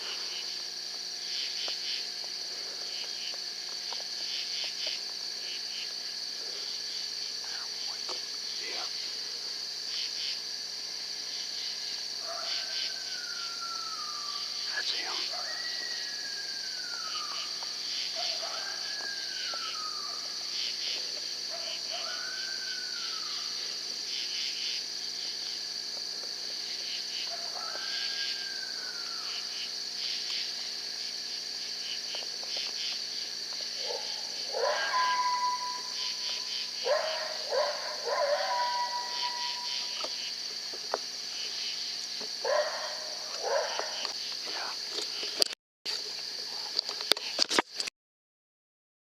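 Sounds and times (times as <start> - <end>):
insects chirring: 0.0 - 47.9
coyotes howling: 12.2 - 23.8, 27.2 - 29.7, 33.7 - 40.1, 42.4 - 44.1.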